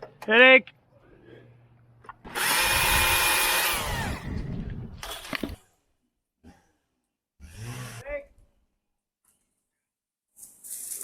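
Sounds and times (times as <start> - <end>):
electric chainsaw running: 2.2 - 4.4, 7.4 - 8.0.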